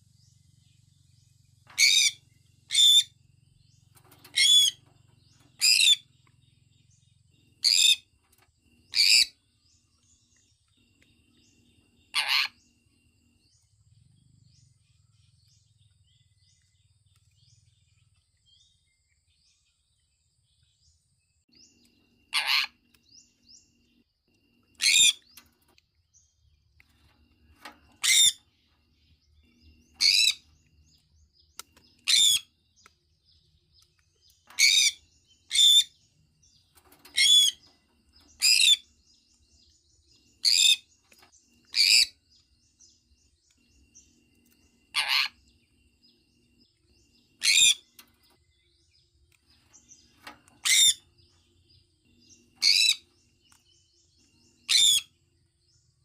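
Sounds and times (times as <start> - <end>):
faint small chirps: 0.0 - 56.0
parrot shrill chirping calls: 1.8 - 3.1, 4.3 - 4.8, 5.6 - 6.0, 8.9 - 9.4, 12.1 - 12.6, 22.3 - 22.8, 24.8 - 25.2, 28.0 - 28.4, 30.0 - 30.4, 32.0 - 32.5, 44.9 - 45.4, 47.4 - 47.9, 50.6 - 51.0, 52.6 - 53.0, 54.7 - 55.1.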